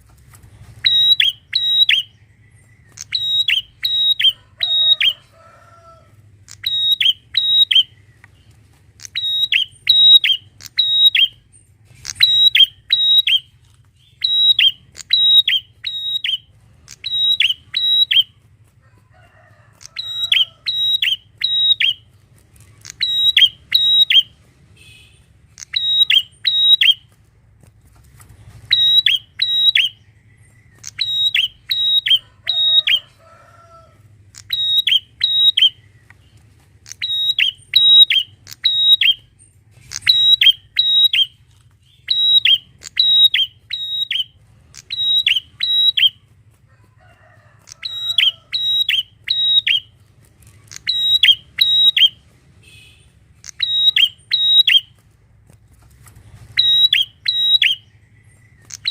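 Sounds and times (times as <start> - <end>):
bird singing high sharp notes: 0.8 - 2.2, 2.8 - 5.1, 6.5 - 8.0, 9.0 - 18.3, 20.0 - 22.0, 22.8 - 24.3, 24.9 - 27.0, 28.7 - 32.2, 34.4 - 35.9, 36.9 - 39.3, 39.9 - 46.2, 50.7 - 54.9.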